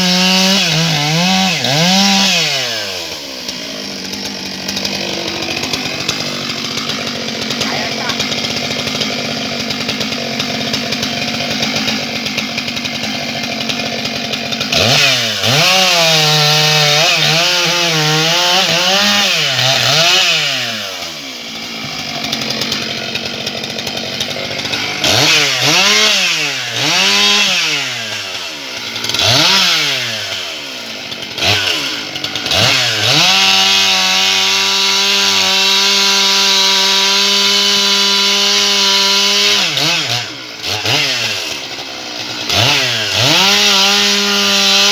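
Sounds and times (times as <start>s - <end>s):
chainsaw revving: 0.0s - 44.9s.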